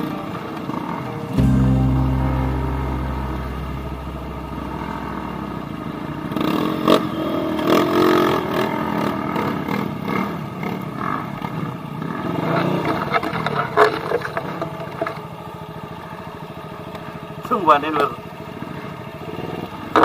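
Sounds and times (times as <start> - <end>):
low steady tone: 1.2 - 7.9.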